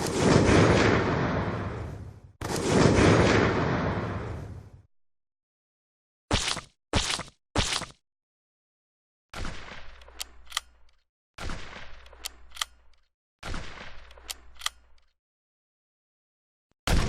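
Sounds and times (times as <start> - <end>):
rifle shot booming: 0.0 - 4.7
rifle action clicks: 10.0 - 11.0, 12.1 - 13.1, 14.0 - 15.2.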